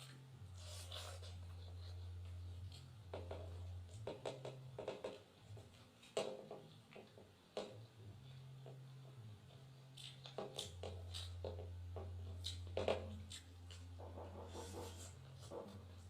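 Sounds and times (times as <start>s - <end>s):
person chewing food: 9.5s - 16.0s.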